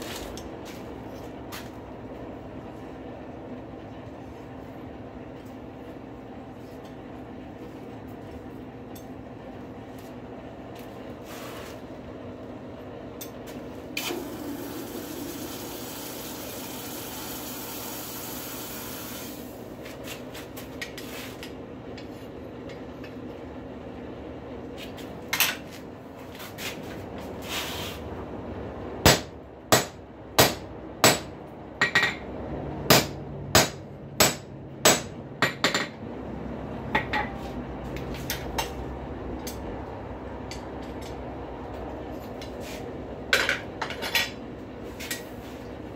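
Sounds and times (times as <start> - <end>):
hammer striking metal on anvil: 29.0 - 32.2, 32.9 - 36.0.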